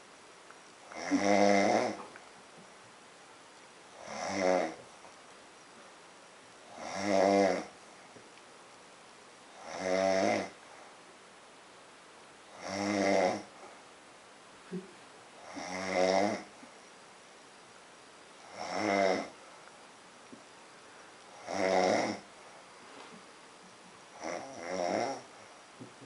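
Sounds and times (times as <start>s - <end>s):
woman snoring: 0.9s - 2.0s, 4.0s - 4.8s, 6.7s - 7.8s, 9.5s - 10.6s, 12.5s - 13.5s, 15.4s - 16.6s, 18.4s - 19.4s, 21.3s - 22.3s, 24.2s - 25.4s.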